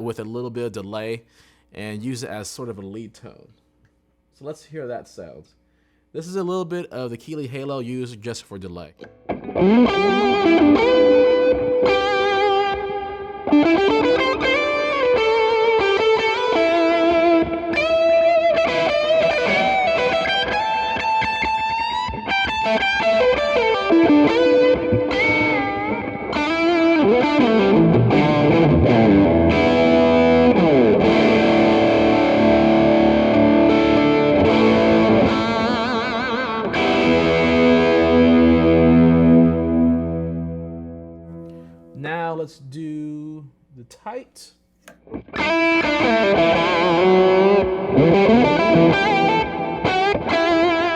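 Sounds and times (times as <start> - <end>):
distorted electric guitar: 9.0 - 41.7, 45.0 - 50.9.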